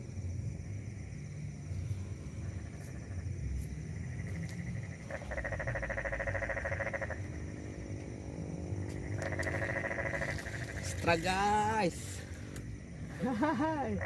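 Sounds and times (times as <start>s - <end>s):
low steady rumble: 0.0s - 14.0s
frog calling with pulsed trill: 2.3s - 11.8s.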